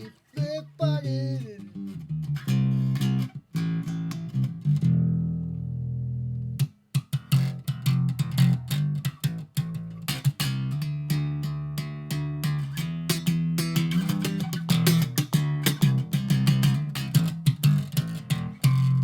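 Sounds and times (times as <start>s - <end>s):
bass guitar: 0.0s - 19.0s
plucked electric guitar: 0.0s - 19.0s.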